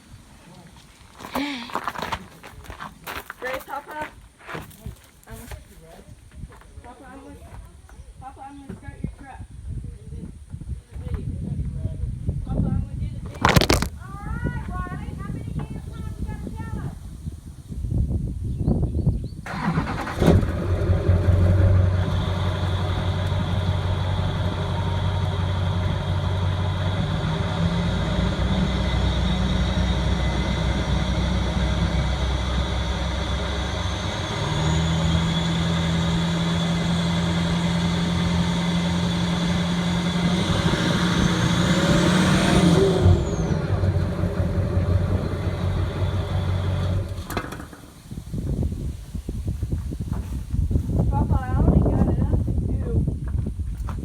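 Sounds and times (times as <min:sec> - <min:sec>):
diesel engine running: 0:19.5 - 0:48.1.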